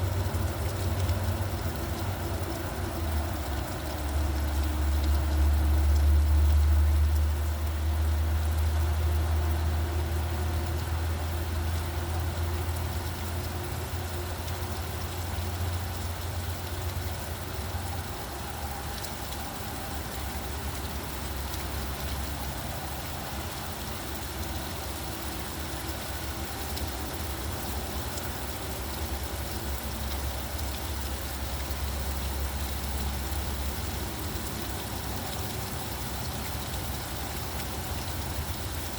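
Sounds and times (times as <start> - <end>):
rain hiss: 0.0 - 38.9.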